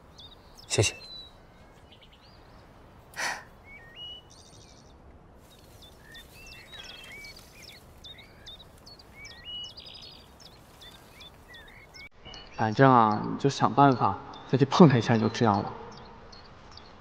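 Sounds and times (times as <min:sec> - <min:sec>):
soft outdoor hiss: 0:00.0 - 0:13.6
faint songbirds chirping: 0:00.0 - 0:17.0
brief breathy sound: 0:03.2 - 0:03.5.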